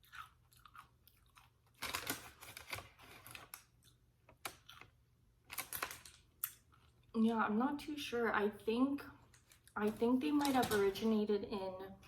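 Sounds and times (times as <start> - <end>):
chewing crunchy chips: 0.0 - 7.1.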